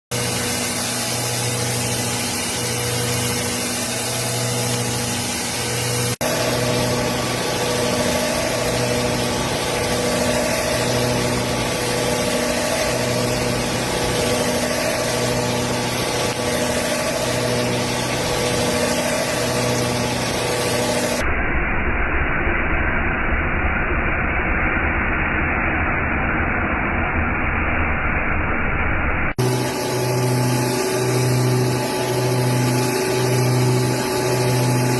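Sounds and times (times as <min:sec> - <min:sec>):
milling machine humming: 0:00.1 - 0:21.2, 0:29.4 - 0:34.9.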